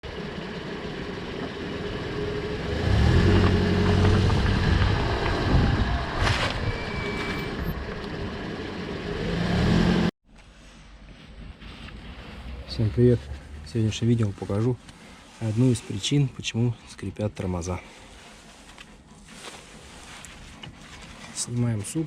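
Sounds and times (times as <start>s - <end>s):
car engine: 0.0s - 10.1s, 10.8s - 15.8s
road noise: 0.0s - 22.0s.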